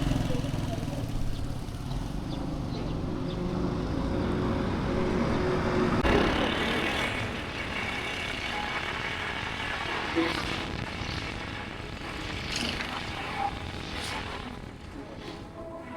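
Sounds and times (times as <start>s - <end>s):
road traffic rumble: 0.0s - 15.9s.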